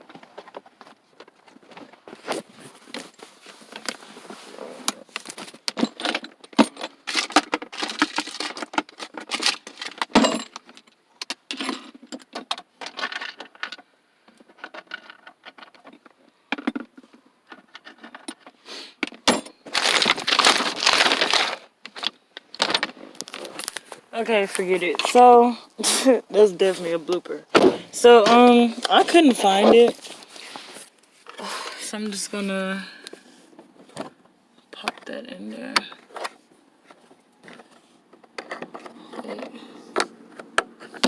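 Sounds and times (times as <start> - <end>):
car parts clinking and clattering: 4.8 - 26.2, 32.8 - 41.0.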